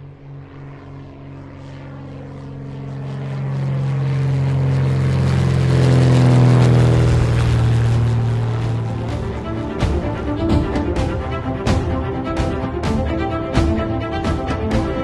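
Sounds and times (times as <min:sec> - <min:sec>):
propeller airplane engine droning: 0:00.0 - 0:15.0.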